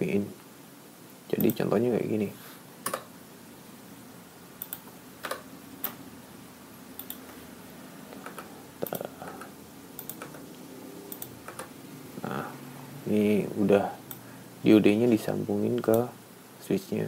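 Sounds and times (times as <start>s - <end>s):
faint steady hum: 0.0s - 17.0s
computer keyboard and mouse clicks: 2.8s - 3.1s, 4.6s - 6.0s, 7.0s - 7.4s, 8.2s - 10.4s, 11.1s - 11.7s.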